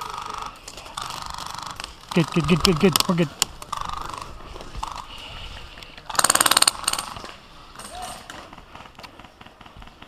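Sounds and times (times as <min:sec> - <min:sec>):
airsoft gun full-auto burst: 0:06.1 - 0:07.1.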